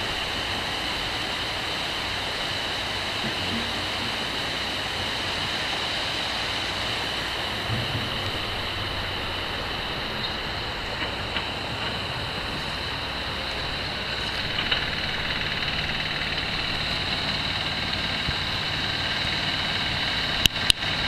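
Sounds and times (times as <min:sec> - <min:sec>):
engine running: 0:00.0 - 0:21.0
high whine: 0:00.0 - 0:21.0.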